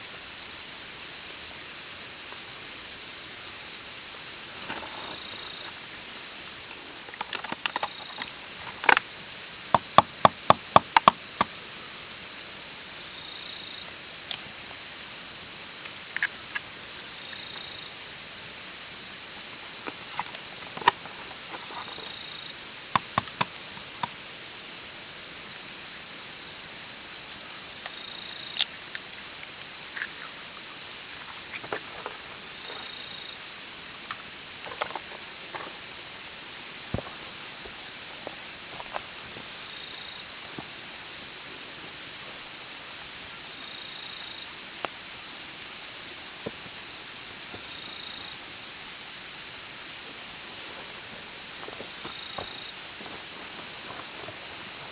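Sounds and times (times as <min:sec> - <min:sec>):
lower insect call: 0:00.0 - 0:54.9
night insects trilling: 0:00.0 - 0:54.9
campfire pops and crackles: 0:09.7 - 0:11.6, 0:19.4 - 0:24.2.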